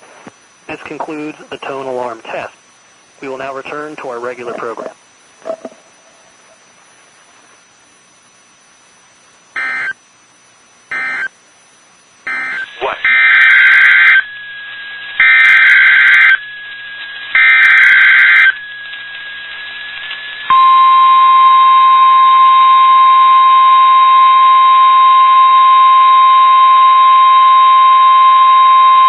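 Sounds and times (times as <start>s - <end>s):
steady warning alarm tone: 9.6s - 10.0s, 10.9s - 11.3s, 12.3s - 14.5s, 15.2s - 16.6s, 17.4s - 18.7s.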